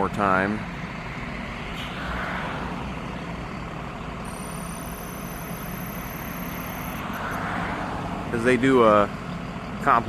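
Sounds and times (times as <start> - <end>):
vehicle engine idling: 0.0 - 10.0
thin high whine: 4.2 - 7.4.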